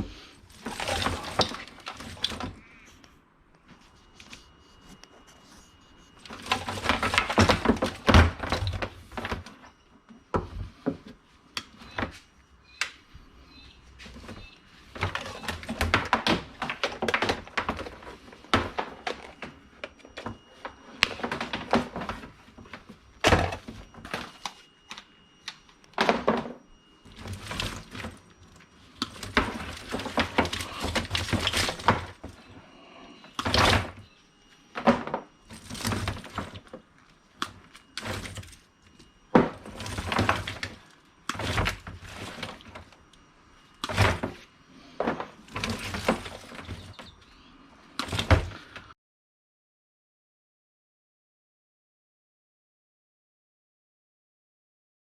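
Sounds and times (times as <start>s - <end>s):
scrap rustling and scraping: 0.0s - 3.0s, 3.7s - 9.8s, 26.0s - 43.0s.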